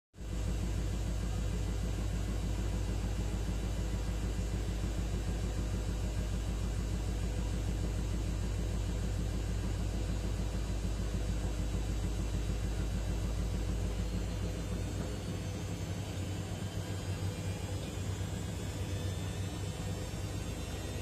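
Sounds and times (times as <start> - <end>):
washing machine spinning: 0.2 - 21.0.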